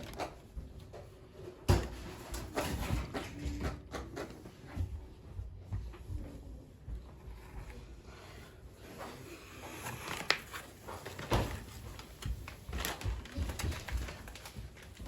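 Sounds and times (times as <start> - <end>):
packaging and parts being handled: 0.0 - 0.5.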